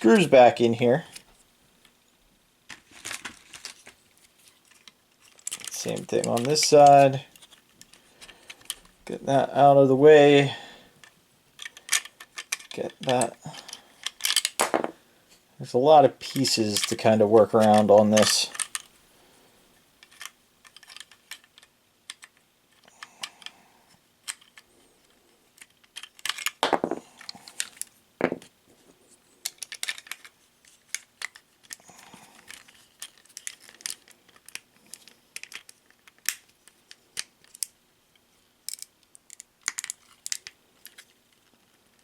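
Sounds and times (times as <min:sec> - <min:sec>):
toy parts clicking and rattling: 0:02.7 - 0:09.0, 0:11.0 - 0:14.9, 0:16.3 - 0:18.9, 0:20.0 - 0:23.5, 0:24.2 - 0:28.5, 0:29.4 - 0:37.8, 0:38.6 - 0:42.0
toy piece knocking: 0:14.0 - 0:15.0, 0:26.0 - 0:28.5.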